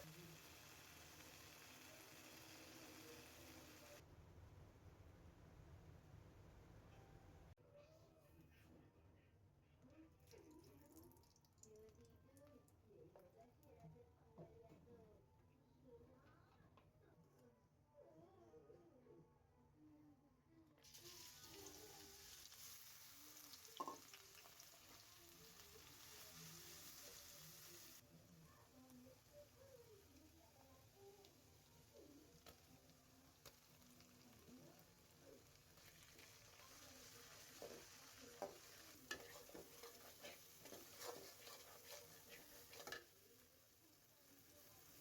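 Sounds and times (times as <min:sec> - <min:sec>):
food sizzling in hot oil: 0:00.0 - 0:04.0, 0:20.9 - 0:28.0, 0:29.2 - 0:45.0
utensil scraping a pan: 0:37.6 - 0:43.2.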